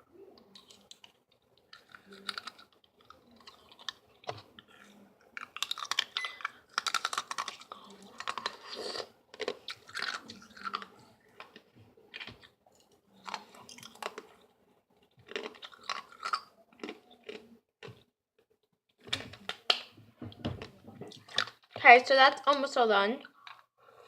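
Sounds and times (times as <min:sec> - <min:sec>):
ice being crunched and chewed: 0:00.6 - 0:14.5, 0:15.1 - 0:18.0.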